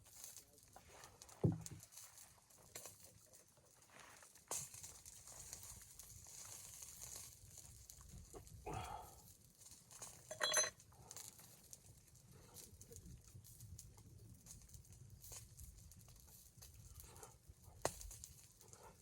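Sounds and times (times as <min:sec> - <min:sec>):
sharp metallic clink: 0:10.3 - 0:10.7.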